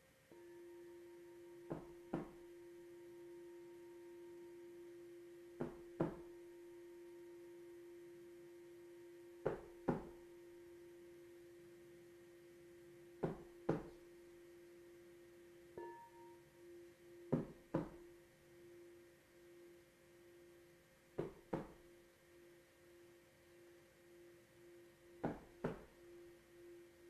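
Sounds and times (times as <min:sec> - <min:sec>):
steady ringing tone: 0:00.0 - 0:27.0
soft knocks in heartbeat rhythm: 0:01.7 - 0:02.4, 0:05.6 - 0:06.3, 0:09.5 - 0:10.2, 0:13.2 - 0:14.0, 0:17.3 - 0:18.0, 0:21.2 - 0:21.8, 0:25.2 - 0:25.9.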